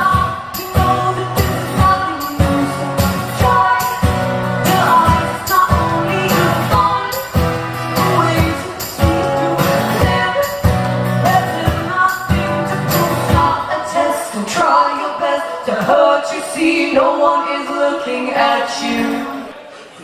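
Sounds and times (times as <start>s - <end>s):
strummed guitar: 0.0s - 14.2s
person singing: 0.0s - 19.6s.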